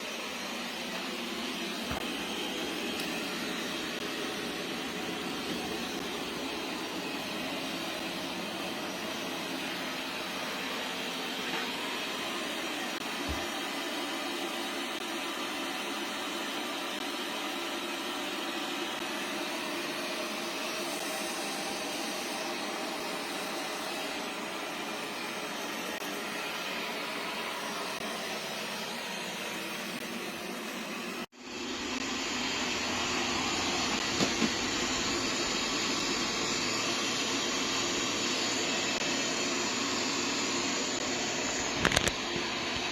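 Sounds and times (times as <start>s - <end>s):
robot vacuum whirring: 0.0s - 42.9s.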